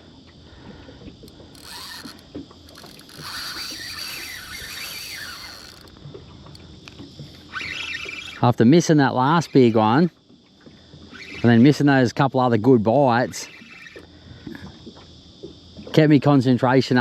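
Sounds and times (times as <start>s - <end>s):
fishing reel drag clicking: 1.0s - 10.1s, 11.1s - 11.8s, 13.2s - 14.1s.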